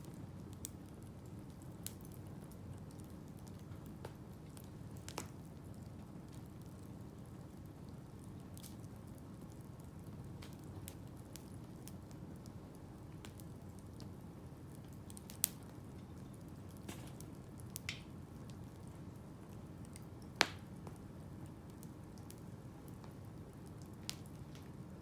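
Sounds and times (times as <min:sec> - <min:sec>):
campfire crackling: 0:00.0 - 0:25.0
loud fire pops: 0:16.8 - 0:18.2, 0:20.4 - 0:21.0.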